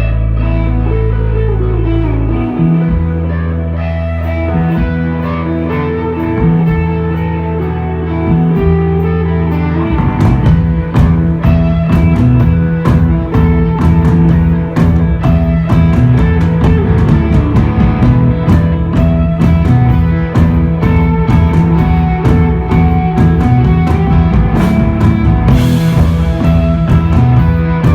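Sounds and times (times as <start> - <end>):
electric guitar and bass sustained notes: 0.0 - 27.9
rock band playing live: 0.0 - 27.9
drum kit: 9.8 - 27.9.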